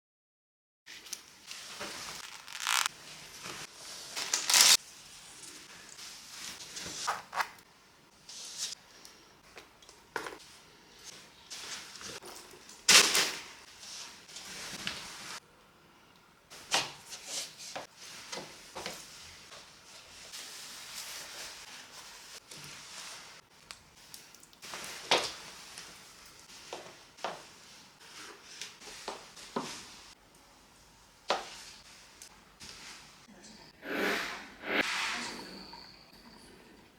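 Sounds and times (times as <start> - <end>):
material rustling and crinkling: 0.9 - 4.8
packaging rustling and tearing: 1.8 - 2.9, 4.2 - 4.8.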